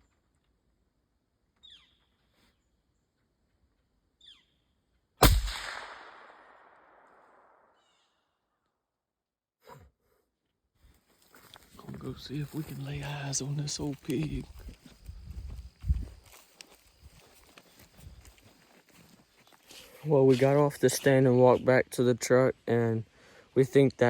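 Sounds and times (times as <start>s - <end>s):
gunshot echoing: 5.2s - 7.7s.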